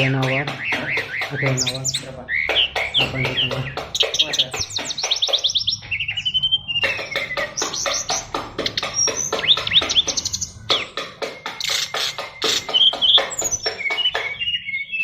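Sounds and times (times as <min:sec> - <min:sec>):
songbird singing: 0:00.0 - 0:15.0.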